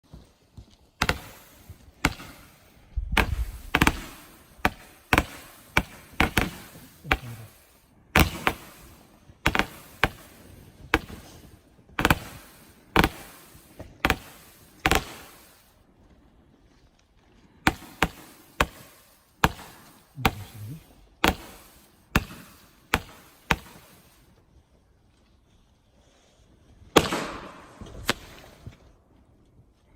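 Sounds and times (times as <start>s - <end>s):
fireworks firing sharp shots: 0.9s - 16.7s, 17.5s - 24.5s, 26.8s - 29.0s.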